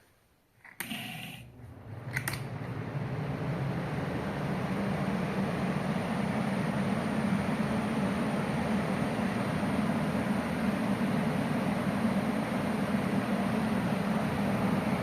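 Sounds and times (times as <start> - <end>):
electric fan whoosh and hum: 0.8 - 15.0
fan switch click: 2.1 - 2.5.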